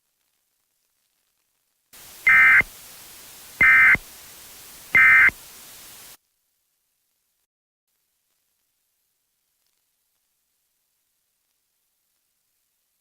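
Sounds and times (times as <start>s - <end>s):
steady hiss: 2.0s - 7.3s.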